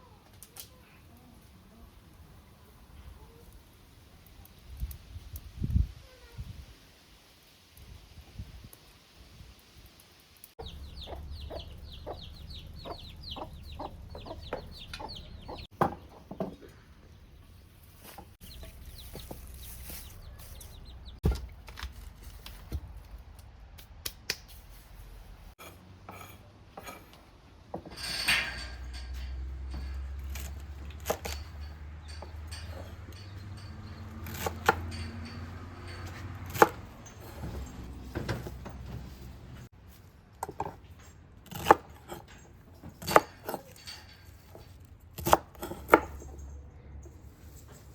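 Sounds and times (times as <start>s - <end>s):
sharp clicks and knocks: 26.8s - 39.1s.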